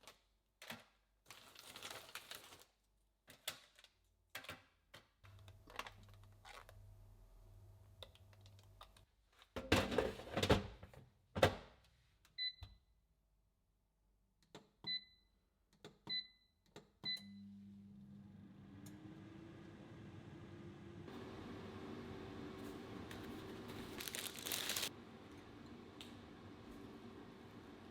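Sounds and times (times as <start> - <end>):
appliance button beeps: 16.1 - 17.5
appliance humming: 17.3 - 27.9.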